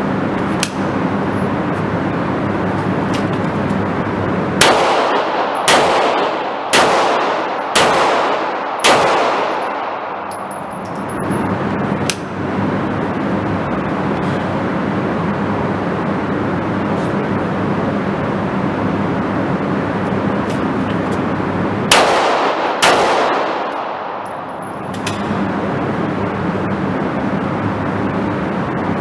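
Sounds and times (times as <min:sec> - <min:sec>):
steady background noise: 0:00.0 - 0:29.0
handgun shots: 0:00.5 - 0:01.0, 0:04.6 - 0:11.3, 0:12.0 - 0:12.4, 0:21.9 - 0:25.4
fainter gunshots: 0:04.6 - 0:10.3, 0:21.9 - 0:24.2.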